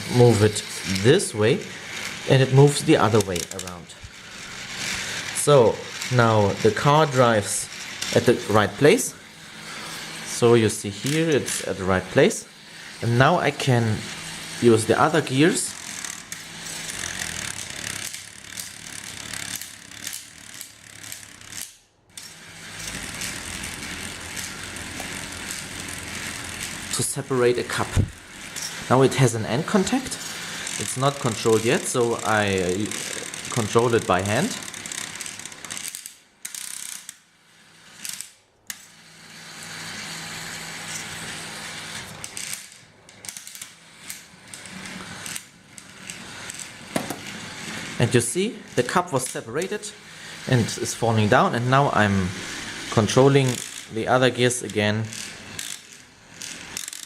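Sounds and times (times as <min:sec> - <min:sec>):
gears ratcheting clicks: 0:00.0 - 0:57.0
toy motor whirring: 0:00.0 - 0:57.0
irregular clicks and knocks: 0:42.2 - 0:47.3.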